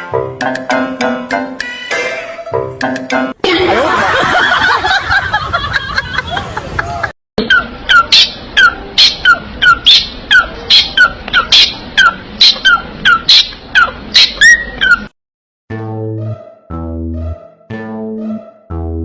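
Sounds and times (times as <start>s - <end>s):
parrot calling: 7.4s - 15.1s.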